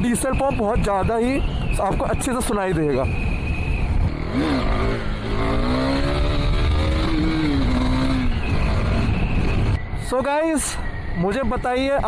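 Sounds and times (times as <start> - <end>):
motorcycle engine revving: 3.9 - 9.8.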